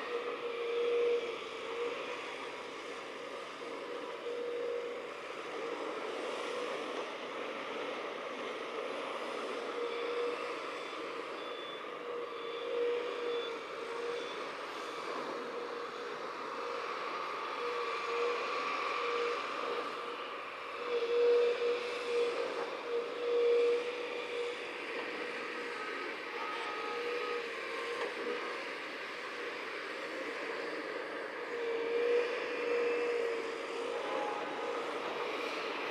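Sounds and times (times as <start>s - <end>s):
reversing alarm beeping: 11.3s - 14.4s
heavy construction machinery running: 21.8s - 35.9s.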